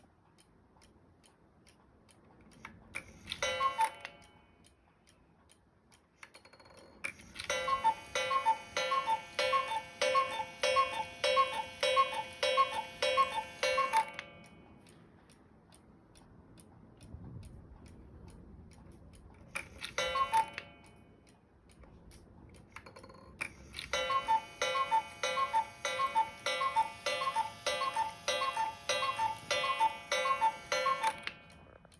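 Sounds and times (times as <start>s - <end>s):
cuckoo clock ticking: 0.0s - 17.1s, 19.6s - 21.8s, 22.6s - 31.9s
cuckoo call: 7.5s - 14.2s, 24.0s - 31.3s.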